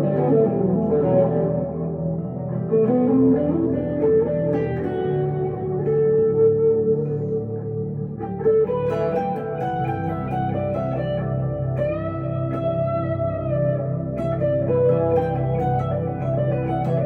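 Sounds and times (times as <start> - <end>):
electric guitar slow melody: 0.0 - 17.0.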